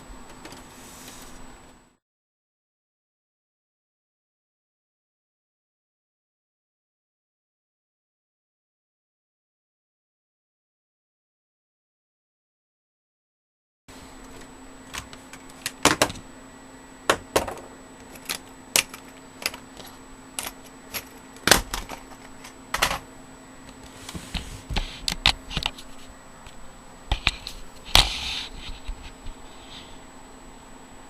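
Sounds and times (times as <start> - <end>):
faint steady hum: 0.0 - 2.0, 13.9 - 31.0
plug connectors clicking: 18.1 - 22.0.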